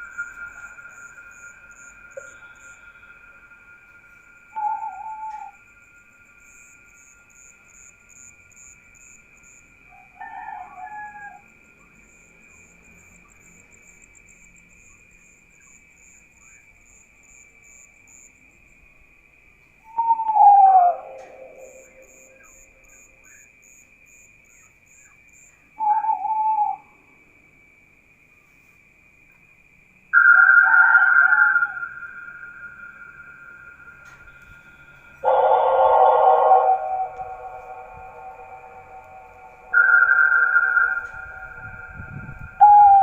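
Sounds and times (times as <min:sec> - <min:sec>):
night insects droning: 0:00.0 - 0:43.0
falling animal calls: 0:30.2 - 0:43.0.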